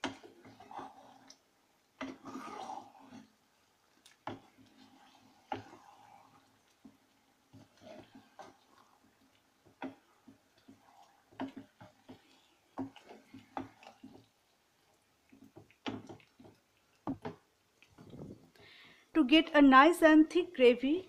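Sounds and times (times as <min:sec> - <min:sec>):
spatula scraping a pan: 0:00.0 - 0:01.4, 0:02.0 - 0:17.4.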